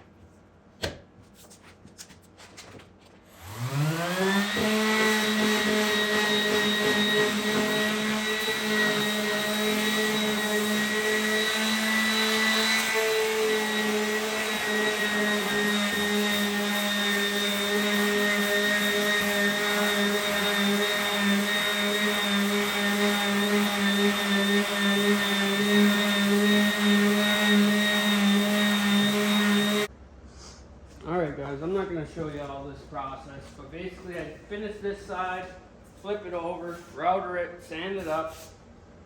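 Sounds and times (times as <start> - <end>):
electric sander on wood: 3.3 - 29.9.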